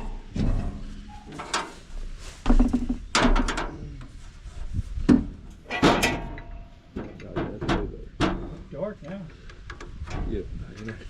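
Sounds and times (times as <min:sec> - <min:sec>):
hand tools knocking and clunking: 0:02.4 - 0:03.8.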